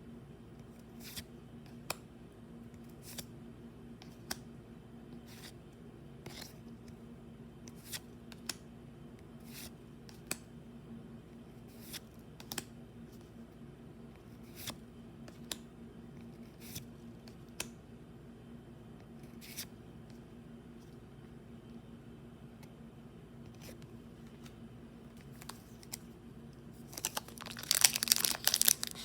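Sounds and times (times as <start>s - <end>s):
steady low hum: 0.0s - 29.0s
trading cards sliding snaps: 4.0s - 4.5s, 11.8s - 12.7s.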